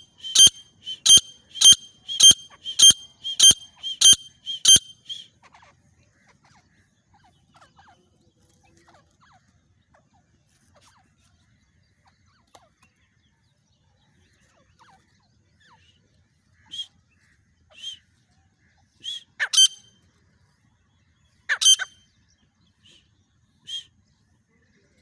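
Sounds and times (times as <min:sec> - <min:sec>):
small birds chirping: 0:00.0 - 0:13.0, 0:18.8 - 0:25.0
francolin calling sharp high notes: 0:00.1 - 0:05.2.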